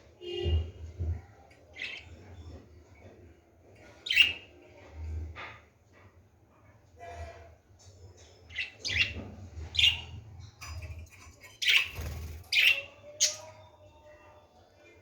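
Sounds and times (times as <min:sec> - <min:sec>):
budgerigars chirping: 0:08.5 - 0:10.1.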